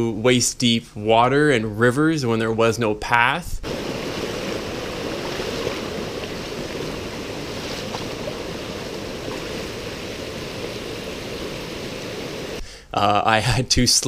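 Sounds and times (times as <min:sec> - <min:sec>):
rushing river water: 0:03.6 - 0:12.6.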